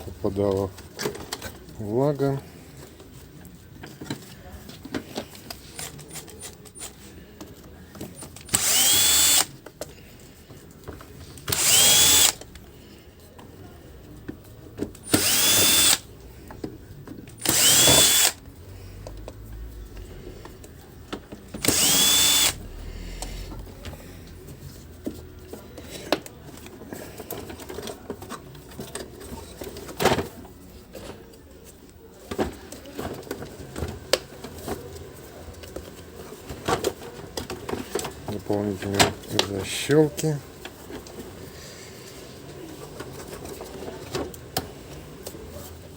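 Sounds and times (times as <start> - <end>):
electric screwdriver running: 8.4 - 9.5, 11.5 - 12.5, 15.0 - 16.0, 17.4 - 18.4, 21.6 - 22.7.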